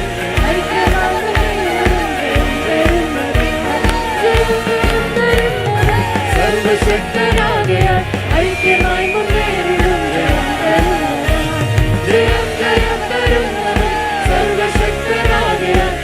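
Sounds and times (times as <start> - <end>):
steady drumbeat: 0.0 - 16.0
worship band playing a song: 0.0 - 16.0.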